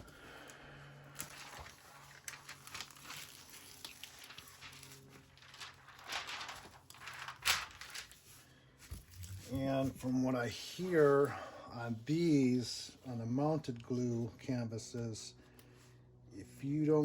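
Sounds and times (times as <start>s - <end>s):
faint low hum: 0.0s - 17.0s
plastic crinkling and rustling: 1.1s - 10.2s.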